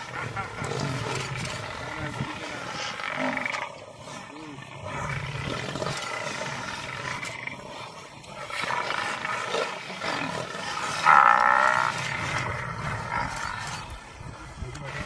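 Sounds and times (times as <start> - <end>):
lions snarling and growling: 0.0 - 15.0.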